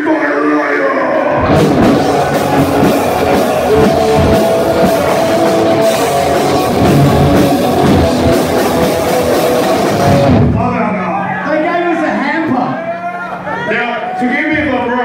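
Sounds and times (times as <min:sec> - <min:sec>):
distorted electric guitars: 0:01.1 - 0:10.8
drum kit: 0:01.4 - 0:11.0.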